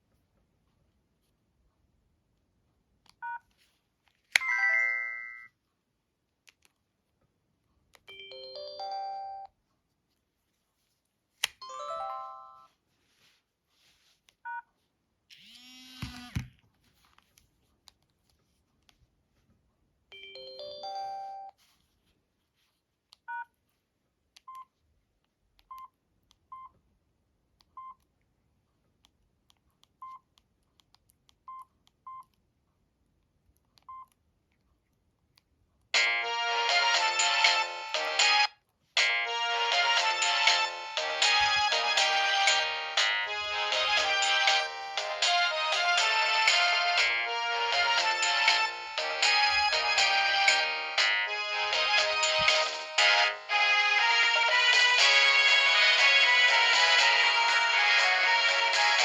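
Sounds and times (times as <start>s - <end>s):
phone chime phrases: 4.4s - 5.5s, 11.6s - 12.8s.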